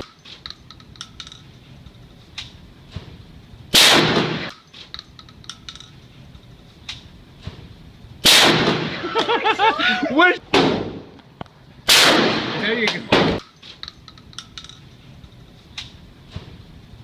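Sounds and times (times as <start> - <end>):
sharp clicks and knocks: 0.0 - 3.1, 4.4 - 6.0, 12.8 - 14.9
shotgun shots: 3.7 - 4.6, 8.2 - 9.1, 10.5 - 11.1, 11.9 - 13.4.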